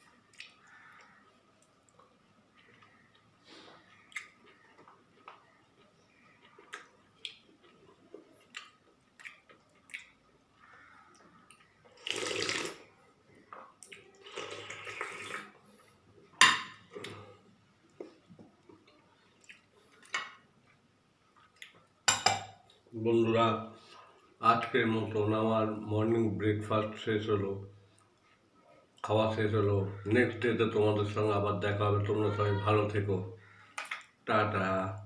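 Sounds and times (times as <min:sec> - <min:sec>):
tableware clicks and taps: 0:16.4 - 0:16.8, 0:22.1 - 0:22.6.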